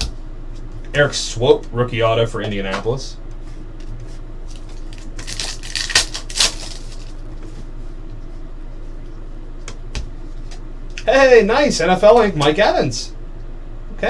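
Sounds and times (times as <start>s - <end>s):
steady low hum: 0.0s - 14.0s
card wrappers rustling: 4.5s - 7.4s.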